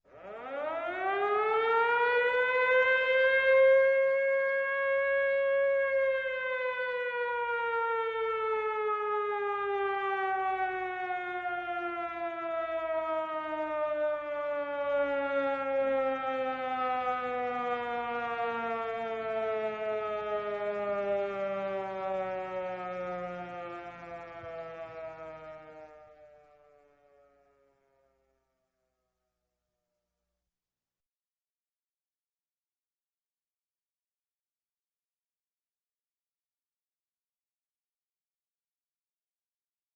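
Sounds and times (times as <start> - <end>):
air raid siren wailing: 0.1 - 28.4.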